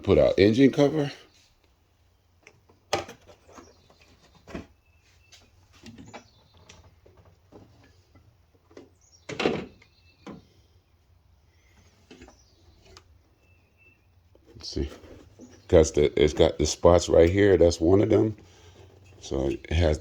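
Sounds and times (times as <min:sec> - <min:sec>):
hard plastic knocks and clunks: 0:02.7 - 0:03.7, 0:08.6 - 0:10.5.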